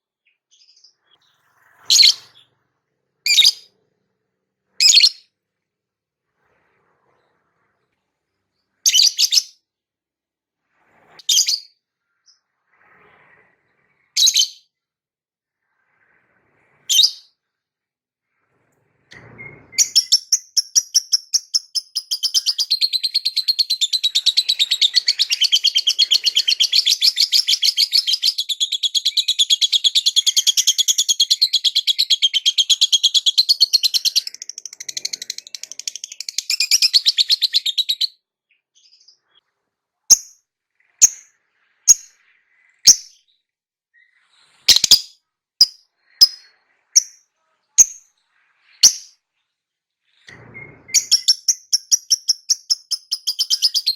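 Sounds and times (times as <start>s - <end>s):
bird sharp chirps: 0.2s - 2.6s, 3.3s - 3.7s, 4.8s - 5.3s, 8.8s - 9.6s, 11.2s - 12.4s, 14.2s - 14.7s, 16.9s - 17.3s, 19.2s - 39.5s, 40.1s - 49.2s, 50.1s - 53.9s.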